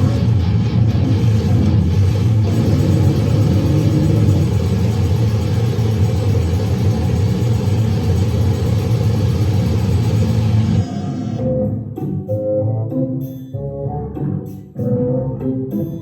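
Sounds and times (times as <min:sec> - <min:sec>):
heavily distorted low rumbling noise: 0:00.0 - 0:11.4.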